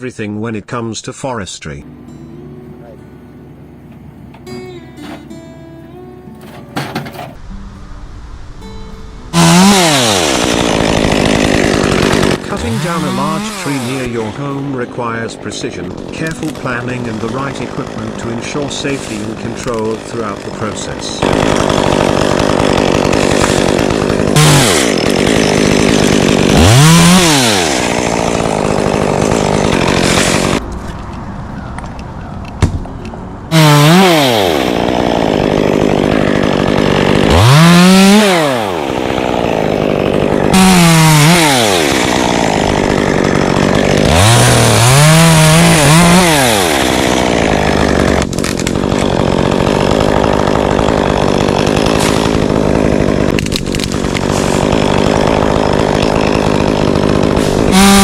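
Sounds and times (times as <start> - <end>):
chainsaw engine revving: 9.3 - 30.8, 32.8 - 58.0.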